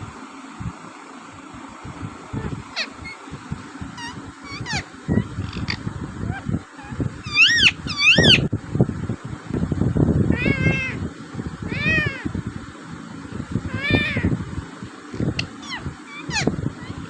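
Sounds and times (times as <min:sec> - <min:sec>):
low background noise: 0:00.0 - 0:17.0
parrot calling: 0:02.3 - 0:08.4, 0:10.3 - 0:11.0, 0:11.7 - 0:12.3, 0:13.7 - 0:14.4, 0:15.2 - 0:17.0.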